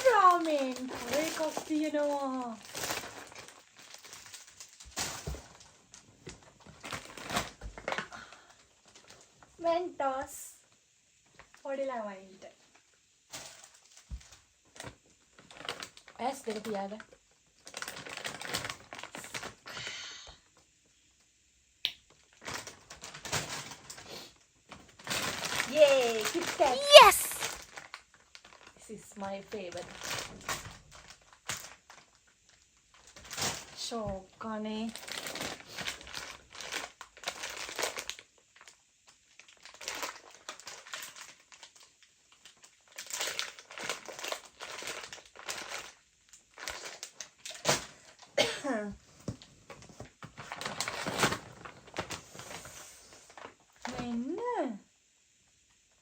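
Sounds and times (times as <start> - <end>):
plastic wrappers crinkling: 0.0 - 9.4, 13.4 - 16.7, 17.6 - 19.6, 22.1 - 24.1, 24.7 - 28.8, 29.7 - 33.7, 34.9 - 47.9, 49.7 - 52.5.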